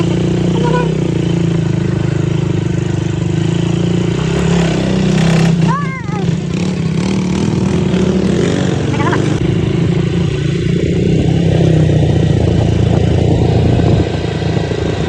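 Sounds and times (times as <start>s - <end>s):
quad engine running: 0.0s - 15.0s.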